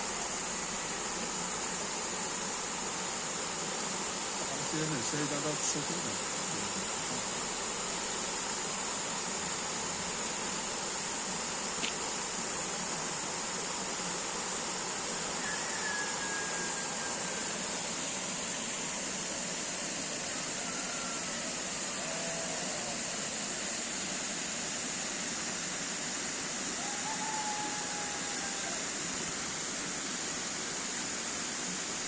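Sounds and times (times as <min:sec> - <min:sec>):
faint thin whistles: 0:15.4 - 0:17.5.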